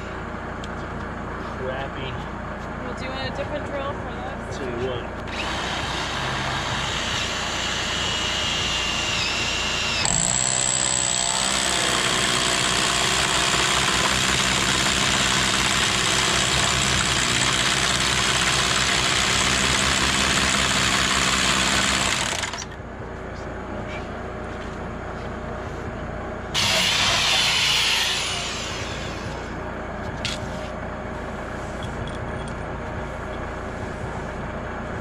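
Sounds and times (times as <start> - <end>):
electric drill boring: 5.3 - 22.7, 26.6 - 29.6.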